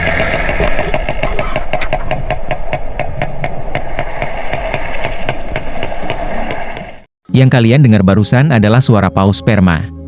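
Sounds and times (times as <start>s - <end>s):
sperm whale clicking: 0.0s - 7.1s.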